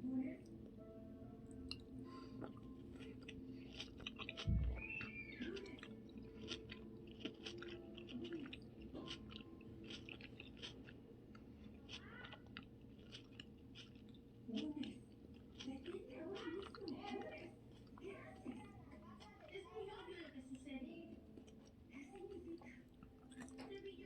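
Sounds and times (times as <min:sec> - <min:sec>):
wet chewing mouth clicks: 0:02.4 - 0:19.3
low thump: 0:04.5 - 0:04.8.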